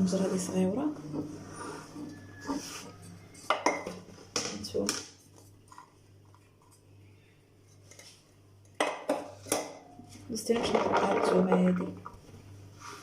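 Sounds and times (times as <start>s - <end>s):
kitchenware clinking and knocking: 3.4s - 5.0s, 8.8s - 11.9s.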